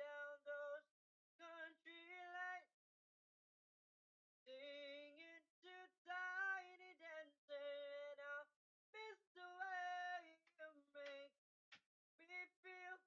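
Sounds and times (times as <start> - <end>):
man singing unaccompanied: 0.0 - 2.7, 4.5 - 11.4, 12.2 - 13.0.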